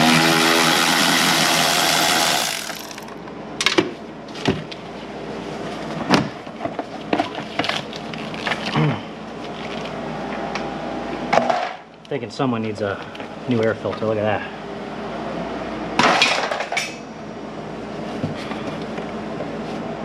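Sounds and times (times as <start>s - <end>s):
power tool running: 0.0s - 3.2s.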